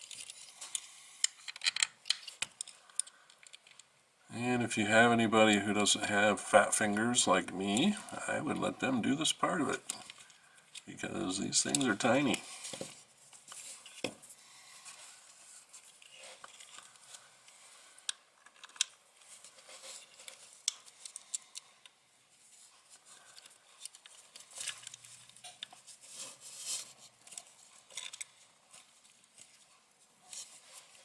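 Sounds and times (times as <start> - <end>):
small metal parts clicking: 0.0 - 3.8.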